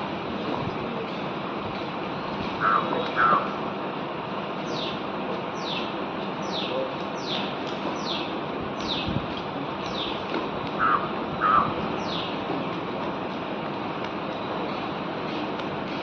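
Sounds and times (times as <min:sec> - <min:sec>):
steady background noise: 0:00.0 - 0:16.0
bird calling: 0:02.6 - 0:03.5, 0:10.8 - 0:12.4.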